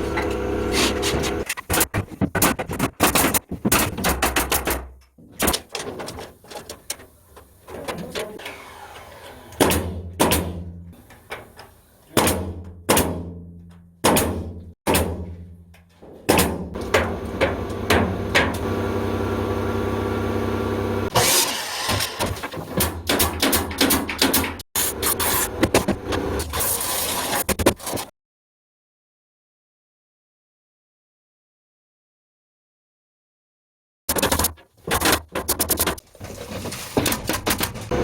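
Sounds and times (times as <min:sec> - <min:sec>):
machine motor humming: 0:00.0 - 0:01.4, 0:16.8 - 0:21.2, 0:24.8 - 0:26.4
sharp knocks and bangs: 0:09.6 - 0:11.0, 0:12.1 - 0:18.7, 0:21.1 - 0:26.3.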